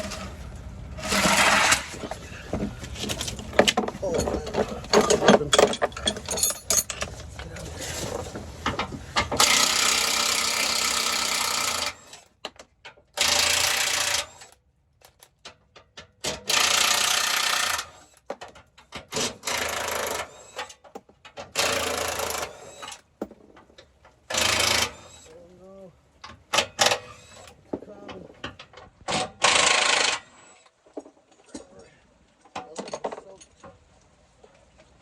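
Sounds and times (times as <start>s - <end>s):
impact wrench bursts: 9.4s - 12.1s, 13.2s - 14.5s, 16.3s - 18.0s, 21.6s - 23.0s, 24.3s - 25.3s, 29.1s - 30.6s.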